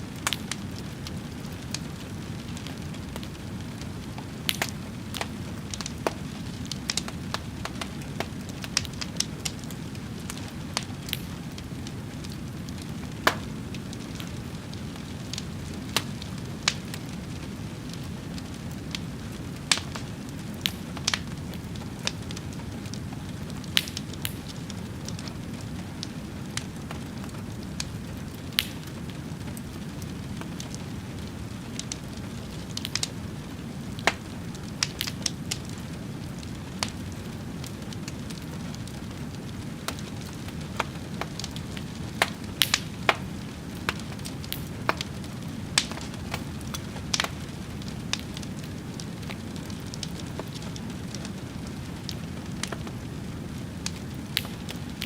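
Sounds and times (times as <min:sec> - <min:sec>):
fire crackling: 0:00.0 - 0:55.0
sharp pops and snaps: 0:00.2 - 0:01.9, 0:04.1 - 0:11.6, 0:12.2 - 0:17.0, 0:19.6 - 0:25.4, 0:27.7 - 0:30.8, 0:32.7 - 0:33.2, 0:34.0 - 0:35.8, 0:38.0 - 0:51.3, 0:52.1 - 0:53.1, 0:53.8 - 0:55.0.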